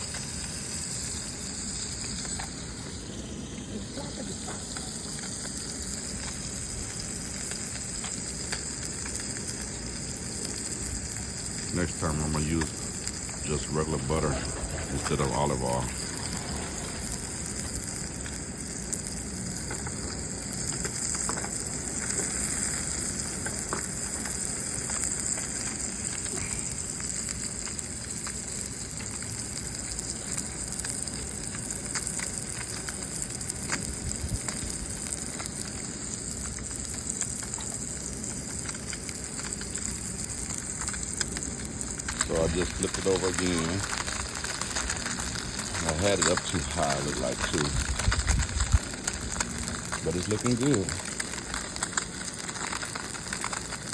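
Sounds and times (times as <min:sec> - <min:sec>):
fish sizzling in oil: 0:00.0 - 0:53.9
oil popping and crackling: 0:00.0 - 0:53.9.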